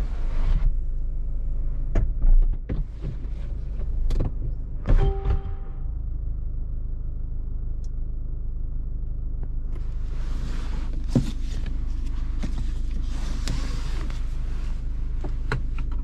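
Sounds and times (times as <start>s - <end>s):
diesel engine rumbling: 0.0s - 16.0s
sharp knock: 4.9s - 5.8s.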